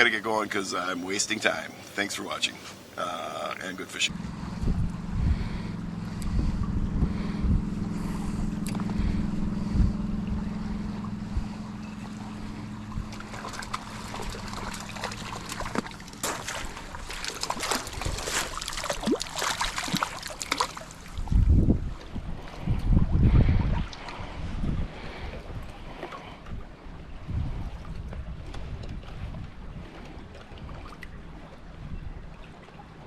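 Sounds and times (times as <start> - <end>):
engine hum: 2.9 - 27.0
wind buffeting microphone: 4.1 - 32.5.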